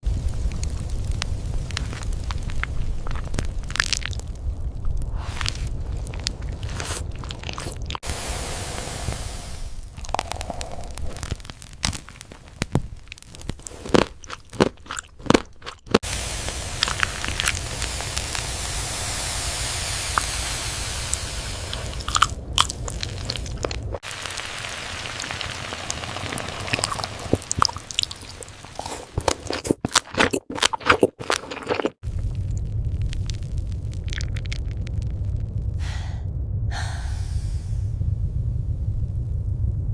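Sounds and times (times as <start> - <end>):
crunching bites and chewing: 1.7 - 4.4, 5.2 - 8.0, 9.9 - 16.0, 16.8 - 18.1, 21.9 - 24.0, 26.7 - 35.1
steady hiss: 8.0 - 13.4, 16.0 - 29.1.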